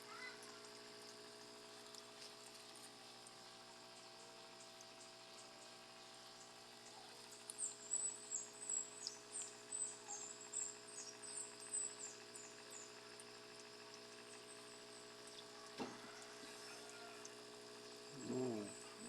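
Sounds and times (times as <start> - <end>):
steady electrical hum: 0.0 - 19.0.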